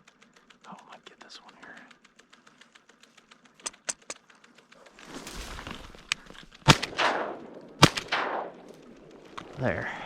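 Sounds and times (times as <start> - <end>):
faint clicks: 0.0 - 7.8, 8.4 - 10.0
rustling: 4.7 - 9.8
shotgun shot: 6.6 - 8.7.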